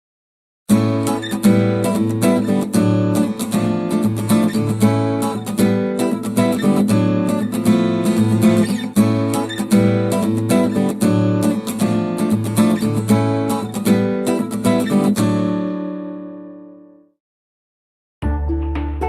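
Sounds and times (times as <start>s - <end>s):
acoustic guitar plucked and strummed: 0.7s - 17.2s.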